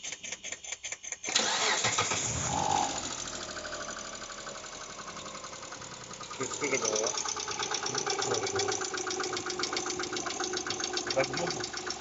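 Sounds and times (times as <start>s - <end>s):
engine starter cranking: 1.3s - 12.0s
engine idling with ticking: 3.0s - 12.0s.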